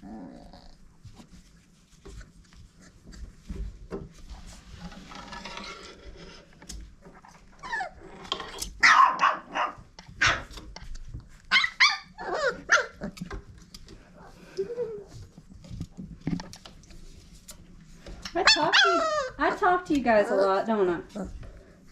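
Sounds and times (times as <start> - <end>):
puppies scuffling: 0.8 - 21.9
puppies barking and yipping: 11.4 - 13.3, 18.4 - 19.4.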